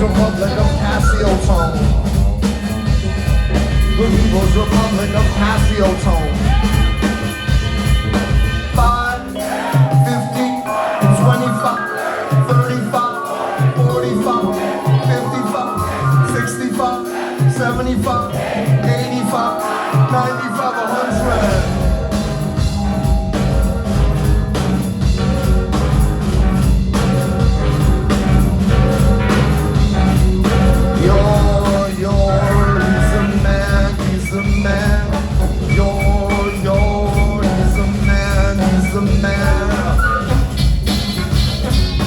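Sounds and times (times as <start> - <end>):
heavy bass line: 0.0 - 12.9, 13.6 - 20.5, 21.1 - 42.0
drums: 0.0 - 42.0
sustained keyboard tones: 9.4 - 24.0, 32.7 - 40.5.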